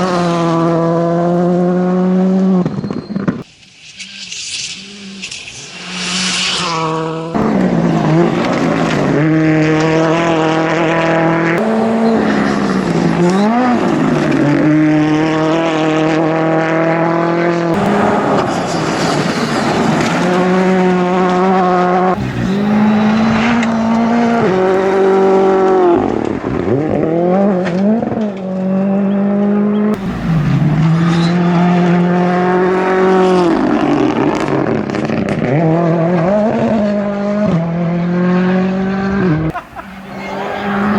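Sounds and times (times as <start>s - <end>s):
rally car engines revving: 0.0s - 40.9s
tyre squeal: 2.5s - 6.8s, 22.2s - 25.3s, 39.5s - 40.9s.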